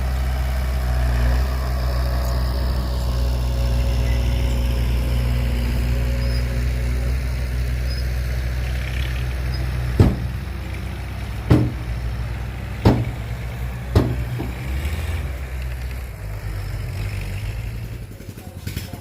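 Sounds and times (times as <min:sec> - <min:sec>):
heavy diesel engine running: 0:00.0 - 0:19.0
sharp bangs: 0:09.8 - 0:10.6, 0:11.4 - 0:14.8.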